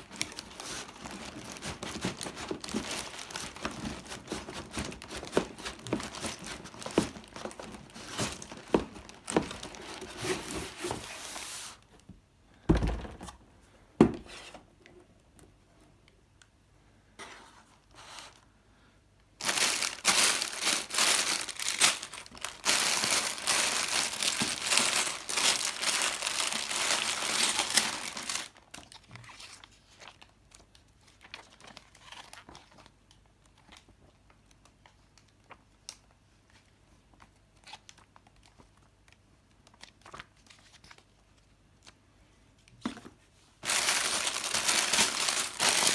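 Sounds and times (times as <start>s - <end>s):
plastic tearing: 0.0s - 11.0s, 19.4s - 29.6s, 43.6s - 45.9s
plastic packaging crinkling: 0.0s - 11.7s, 19.4s - 33.9s, 43.6s - 45.9s.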